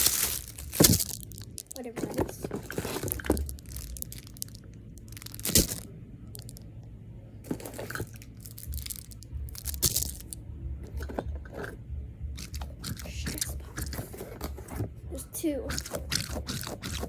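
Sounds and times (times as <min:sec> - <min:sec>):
packaging crinkling and tearing: 0:00.0 - 0:06.6, 0:07.5 - 0:10.4, 0:15.7 - 0:17.0.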